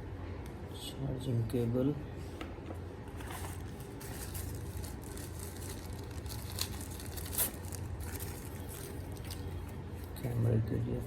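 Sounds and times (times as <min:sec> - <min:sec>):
plastic packaging crinkling: 0:03.2 - 0:10.3.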